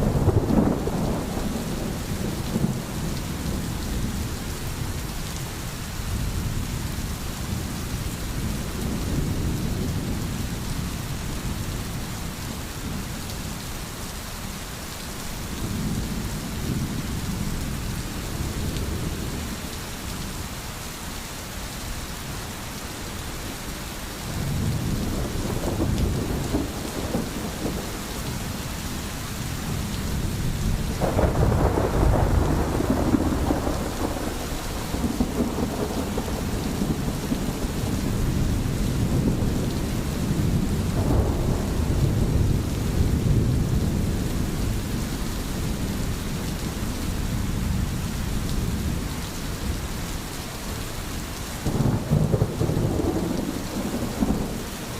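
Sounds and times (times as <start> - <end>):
thunder rumbling: 0.0 - 5.0, 24.3 - 28.7, 29.3 - 49.1, 51.6 - 54.7
steady rain falling: 0.0 - 54.9.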